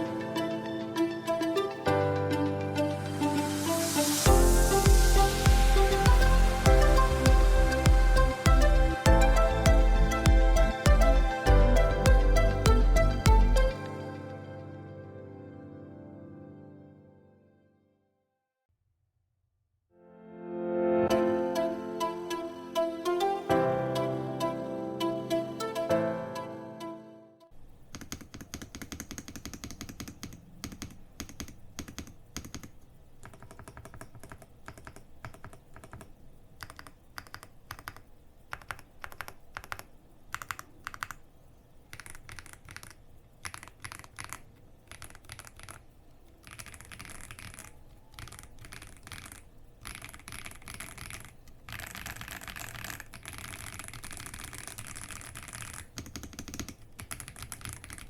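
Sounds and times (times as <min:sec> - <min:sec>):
mechanical keyboard typing: 0:27.9 - 0:58.0.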